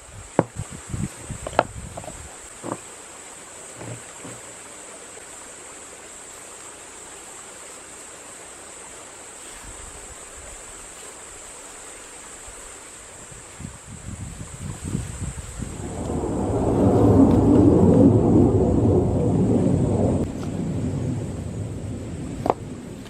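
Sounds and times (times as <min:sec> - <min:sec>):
high hiss: 0:00.0 - 0:23.0
low rumble: 0:15.6 - 0:23.0
steady outdoor rushing noise: 0:15.6 - 0:23.0.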